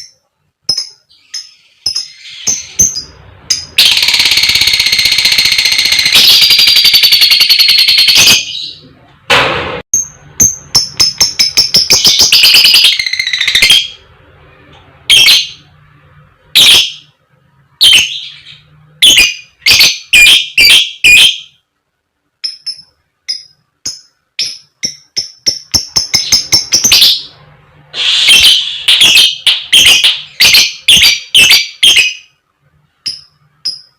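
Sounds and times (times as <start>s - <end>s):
lovebird chattering calls: 0.7s - 8.6s, 10.4s - 14.0s, 22.4s - 27.3s, 28.2s - 32.2s.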